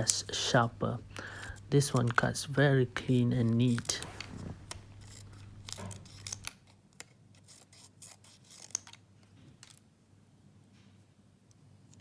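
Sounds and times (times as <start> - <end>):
small scissors snipping: 5.0 - 9.0.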